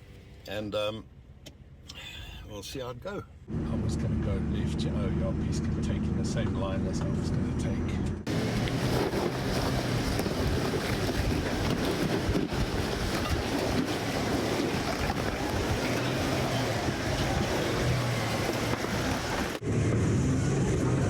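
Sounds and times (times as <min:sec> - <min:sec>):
vehicle engine running low: 0:03.3 - 0:21.0
wind buffeting microphone: 0:08.2 - 0:21.0.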